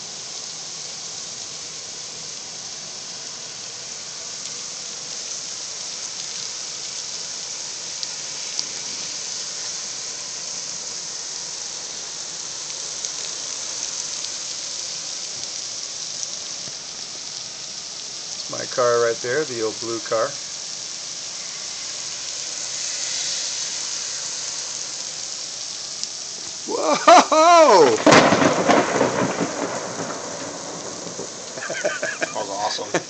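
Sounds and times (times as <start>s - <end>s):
steady rain hiss: 0.0s - 33.0s
raindrops ticking nearby: 12.6s - 20.9s, 25.7s - 33.0s.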